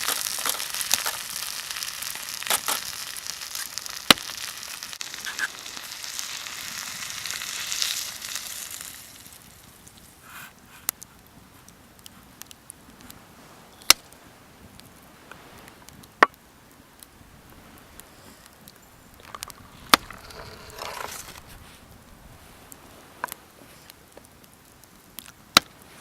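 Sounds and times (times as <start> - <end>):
short rustle: 17.6 - 24.0.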